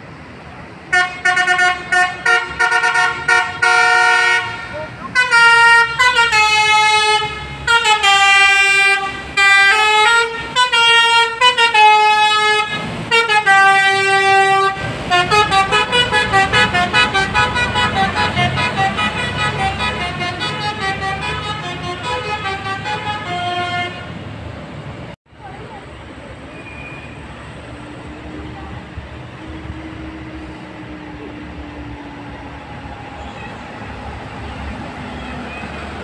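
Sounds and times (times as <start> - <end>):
multi-tone bus horn melody: 0.9 - 24.2.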